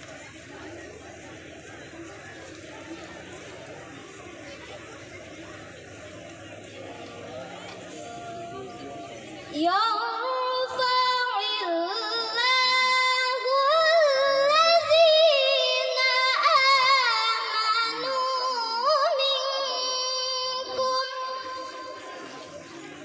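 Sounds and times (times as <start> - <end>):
girl reciting melodically: 9.5 - 22.3.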